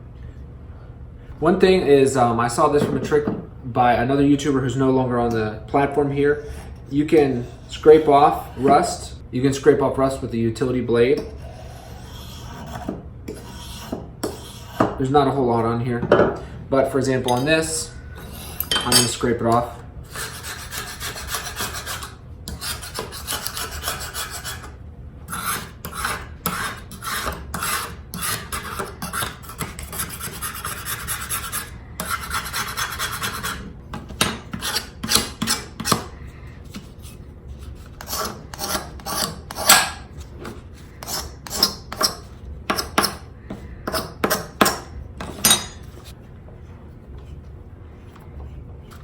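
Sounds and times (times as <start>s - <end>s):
knife blade scraping metal: 18.2s - 36.1s, 37.8s - 40.1s, 41.0s - 43.3s, 43.9s - 46.2s.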